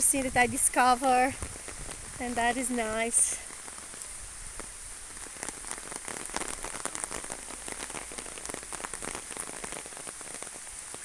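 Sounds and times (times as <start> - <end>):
heavy rain pattering: 0.0 - 11.0.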